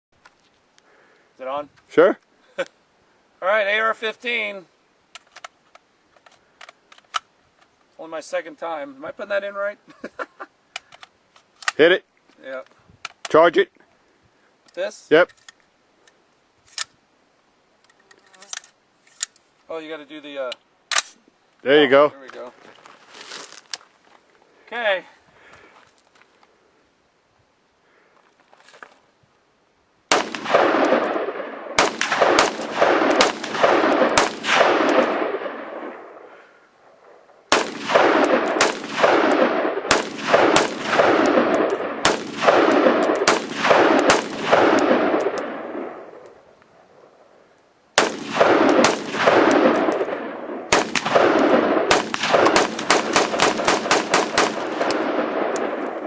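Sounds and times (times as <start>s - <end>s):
rifle shots echoing: 30.1s - 46.2s, 48.0s - 56.0s.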